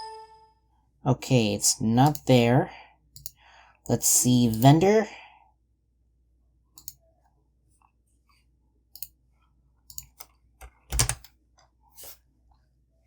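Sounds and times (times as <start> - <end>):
computer mouse clicking: 3.2 - 3.4, 6.8 - 7.0, 9.9 - 11.3.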